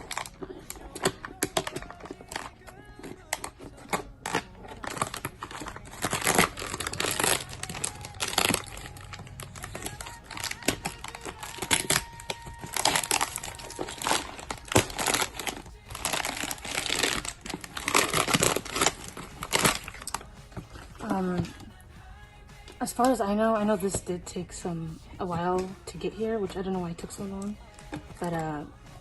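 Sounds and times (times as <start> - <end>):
package wrapping crinkling: 0.0 - 21.8.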